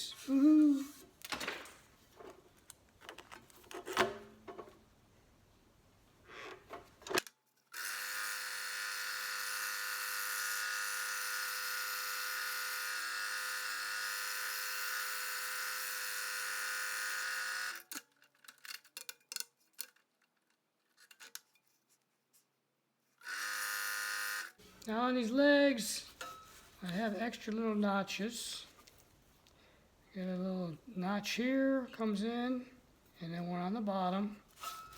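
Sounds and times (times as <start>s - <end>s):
scroll saw running: 7.8s - 17.9s, 23.2s - 24.6s.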